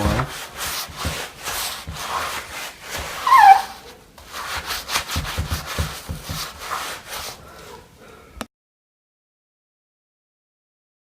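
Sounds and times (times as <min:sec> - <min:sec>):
brush scrubbing wet foam: 0:00.0 - 0:07.5
short high squeak: 0:03.2 - 0:03.9.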